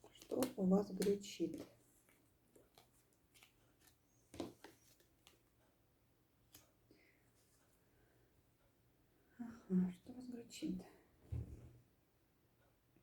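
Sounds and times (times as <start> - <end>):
cards clicking and tapping on table: 0.0 - 1.7, 2.6 - 5.4.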